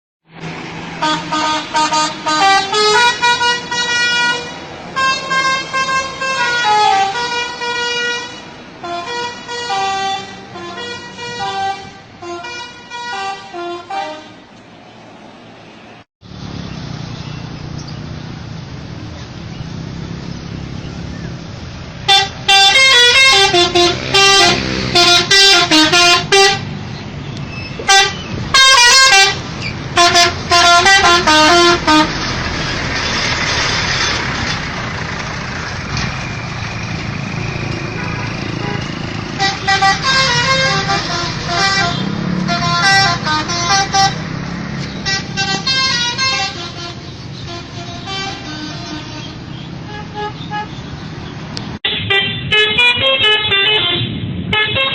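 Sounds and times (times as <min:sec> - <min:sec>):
traffic noise: 0:00.2 - 0:54.9
bus musical horn: 0:01.0 - 0:14.5, 0:22.0 - 0:26.8, 0:27.8 - 0:34.1, 0:37.2 - 0:50.8, 0:51.8 - 0:54.9.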